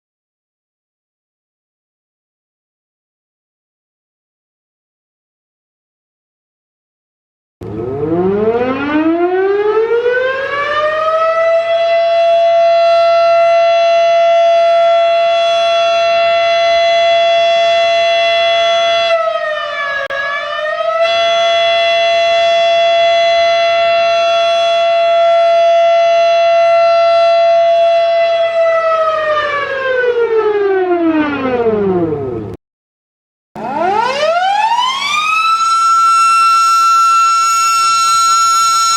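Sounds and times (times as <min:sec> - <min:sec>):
tornado siren winding: 0:33.6 - 0:38.9.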